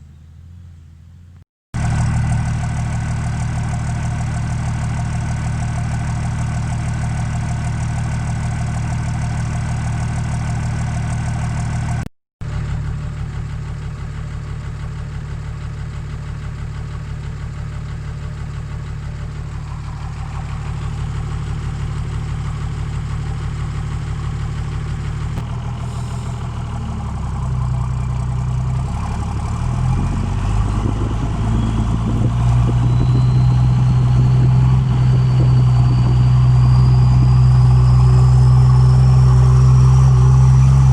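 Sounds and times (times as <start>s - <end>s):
diesel engine idling: 0.0s - 40.9s
turbocharger whine: 19.5s - 40.9s.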